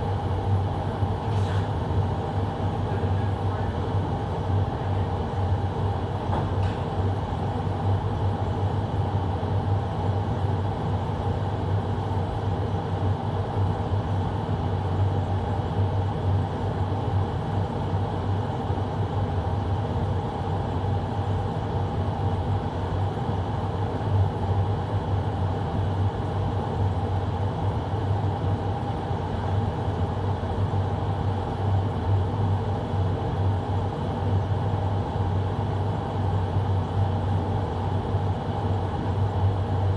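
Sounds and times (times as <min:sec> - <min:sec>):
air conditioner blower humming: 0:00.0 - 0:08.0.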